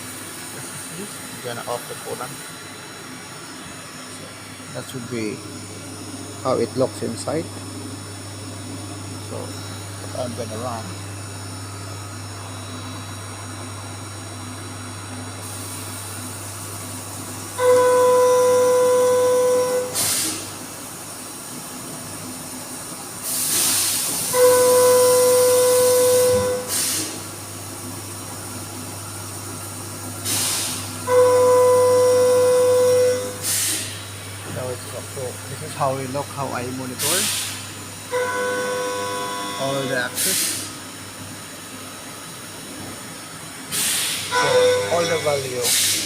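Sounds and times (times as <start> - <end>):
milling machine hum: 0.0 - 46.0
pitched machine whines: 17.5 - 20.5, 24.1 - 27.2, 30.2 - 37.5, 38.1 - 40.7, 44.1 - 46.0
short hissing bursts: 40.2 - 40.8, 43.7 - 44.3.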